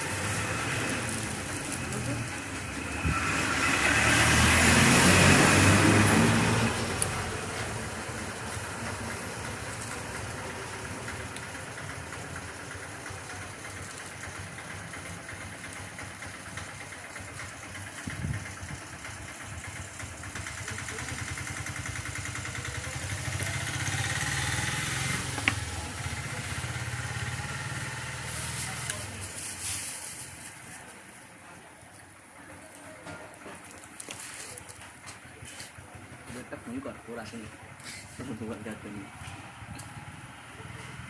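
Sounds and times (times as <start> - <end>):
engine running with pulsing: 5.6 - 29.2.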